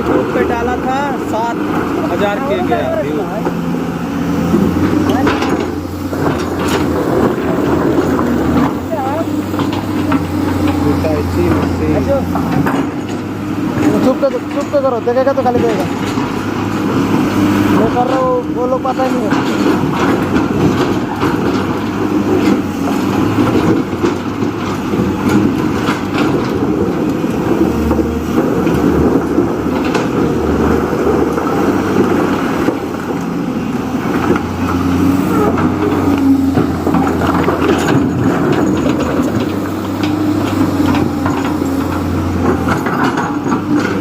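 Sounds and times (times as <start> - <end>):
diesel engine of heavy machinery: 0.0 - 44.0.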